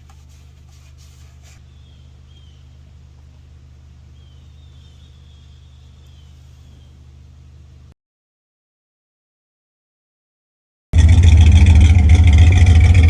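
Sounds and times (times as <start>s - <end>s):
faint low hum: 0.0s - 8.0s
bird chirps: 1.6s - 3.0s, 4.1s - 7.6s.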